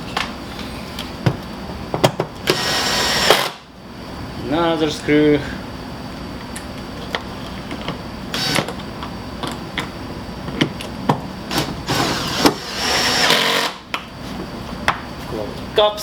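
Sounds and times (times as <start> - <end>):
screw driving noise: 2.4 - 3.6, 8.3 - 8.8, 11.5 - 13.9.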